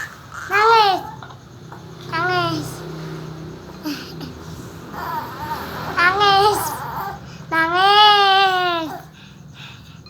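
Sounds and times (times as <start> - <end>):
young child wailing: 0.0 - 1.2, 4.9 - 9.1.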